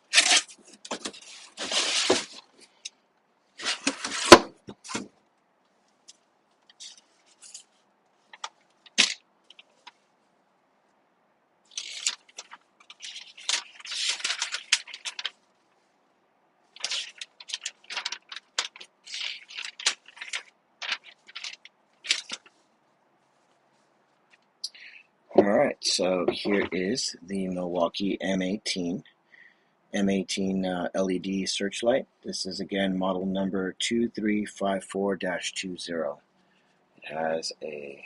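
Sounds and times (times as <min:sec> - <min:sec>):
crinkly rustling and scraping: 0:00.0 - 0:11.0, 0:11.6 - 0:24.6.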